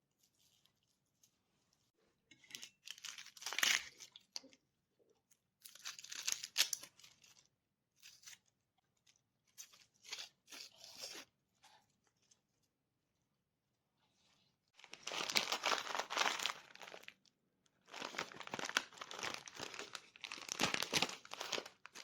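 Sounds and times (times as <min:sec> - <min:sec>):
crunching and crinkling handling: 0:14.8 - 0:22.0.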